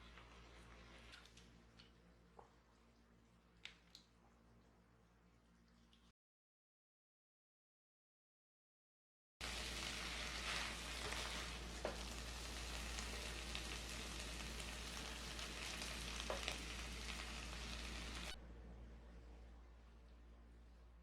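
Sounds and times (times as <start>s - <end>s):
food sizzling in frying pan: 9.4s - 18.4s.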